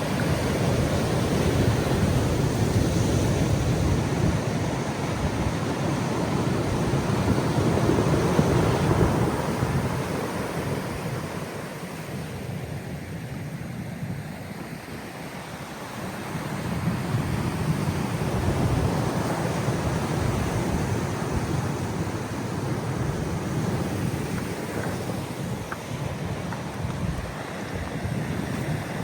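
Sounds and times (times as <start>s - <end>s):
wind buffeting microphone: 0.0s - 13.1s, 14.2s - 29.0s
ocean waves breaking: 0.0s - 29.0s.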